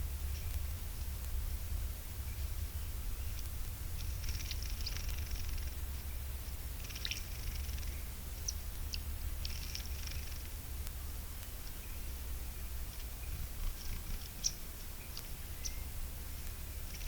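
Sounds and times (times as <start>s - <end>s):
low hum: 0.0s - 17.0s
small animal chattering calls: 4.0s - 5.8s, 6.7s - 10.5s.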